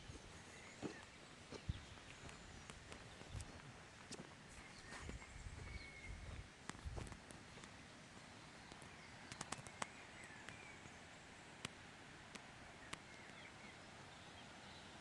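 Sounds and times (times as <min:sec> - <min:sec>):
faint bird chirps: 0:00.0 - 0:03.7, 0:04.5 - 0:06.5, 0:08.1 - 0:11.4, 0:12.7 - 0:15.0
distant river hiss: 0:00.0 - 0:15.0
sharp clicks: 0:09.3 - 0:10.0.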